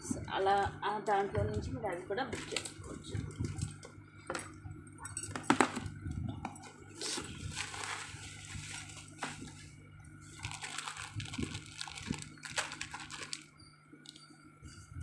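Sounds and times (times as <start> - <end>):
low steady hum: 0.0 - 15.0
packaging rustling: 6.5 - 14.2.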